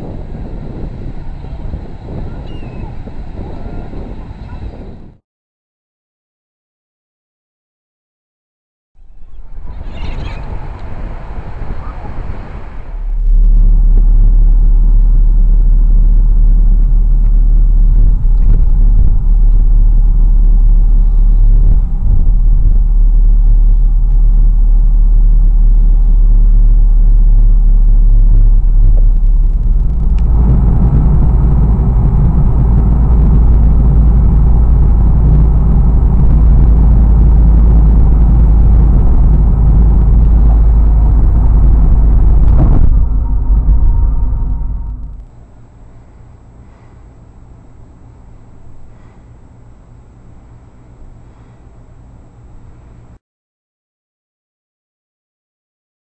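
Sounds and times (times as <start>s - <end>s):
wind buffeting microphone: 0.0s - 5.2s, 9.2s - 45.3s.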